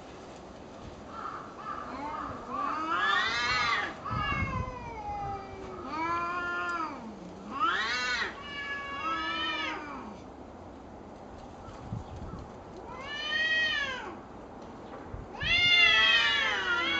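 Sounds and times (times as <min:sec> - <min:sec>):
cats yowling: 0:01.8 - 0:10.3, 0:12.8 - 0:14.2, 0:15.3 - 0:16.9.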